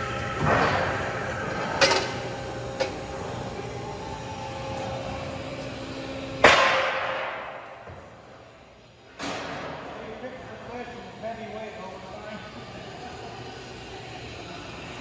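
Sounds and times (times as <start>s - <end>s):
metal clangs: 0.4s - 3.1s.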